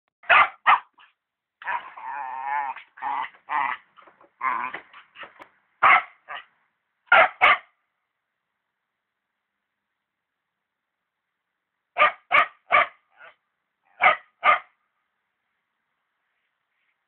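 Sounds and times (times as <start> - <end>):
dog barking: 0.2 - 2.0, 5.2 - 6.5, 7.1 - 7.8, 12.0 - 14.8.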